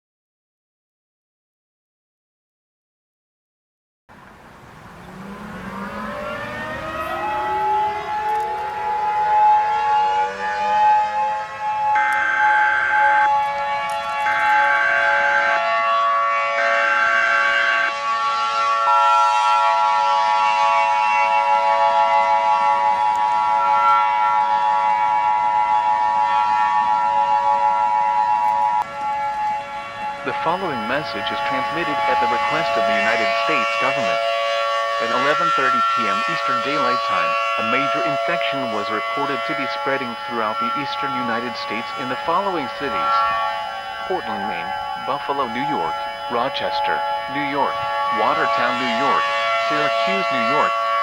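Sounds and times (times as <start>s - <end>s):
siren winding up: 5.0s - 51.0s
two-tone attention signal: 36.8s - 50.7s
alert header data bursts: 39.2s - 50.6s.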